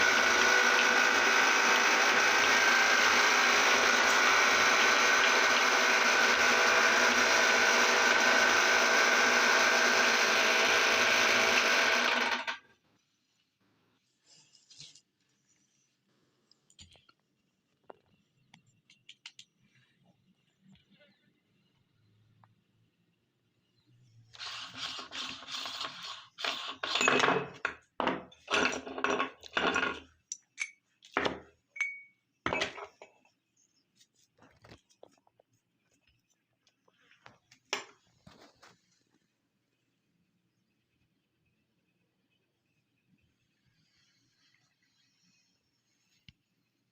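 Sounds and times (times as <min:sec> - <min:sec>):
electric meat grinder running: 0:00.0 - 0:12.6.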